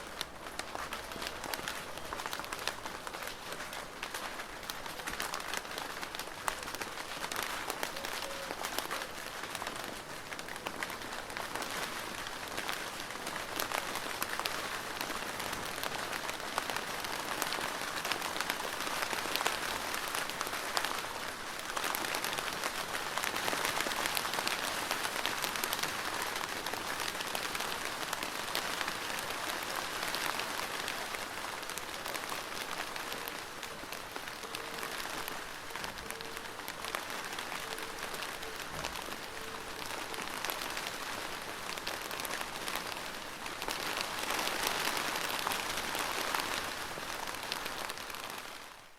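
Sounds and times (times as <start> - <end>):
rain drumming on a plastic roof: 0.0 - 48.9.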